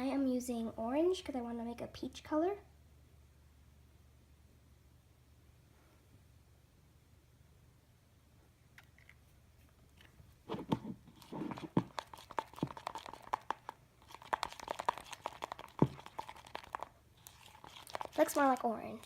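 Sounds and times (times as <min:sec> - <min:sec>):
slime being stirred in a bowl: 0:10.5 - 0:19.0.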